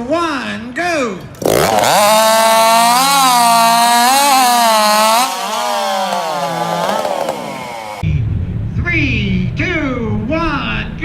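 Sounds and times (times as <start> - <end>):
chainsaw cutting log: 1.3 - 8.0.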